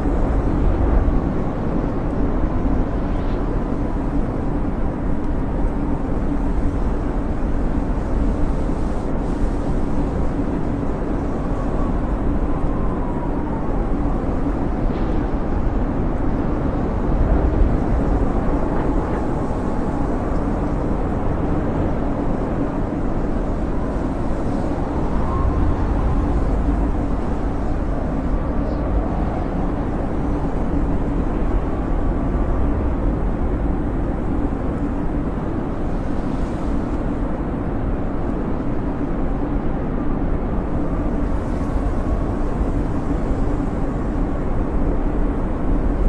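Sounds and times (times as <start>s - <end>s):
snowstorm wind rumbling: 0.0s - 46.0s
faint high wind whistle: 22.8s - 36.9s.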